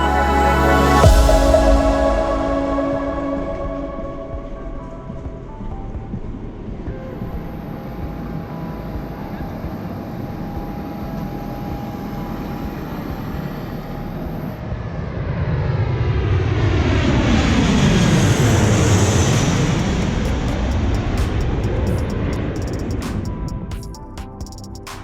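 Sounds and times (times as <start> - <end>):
airplane flying low overhead: 0.0 - 22.6.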